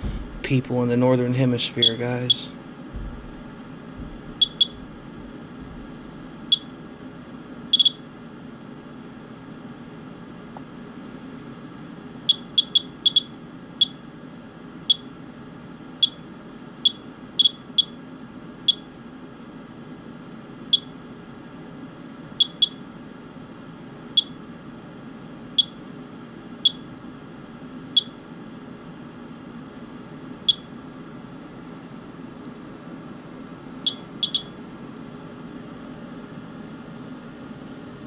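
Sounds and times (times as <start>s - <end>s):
steady low hum: 0.0s - 38.0s
radiation counter beeping: 0.5s - 2.5s, 4.3s - 4.9s, 6.5s - 6.8s, 7.7s - 8.0s, 12.2s - 14.0s, 14.8s - 15.1s, 16.0s - 18.0s, 18.7s - 18.9s, 20.7s - 21.0s, 22.4s - 22.8s, 24.2s - 24.4s, 25.6s - 25.8s, 26.6s - 26.9s, 27.9s - 28.2s, 30.4s - 30.7s, 33.8s - 34.6s.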